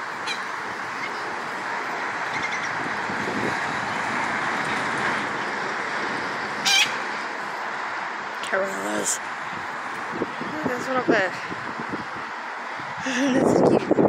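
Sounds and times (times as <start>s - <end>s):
rushing outdoor background noise: 0.0s - 14.0s.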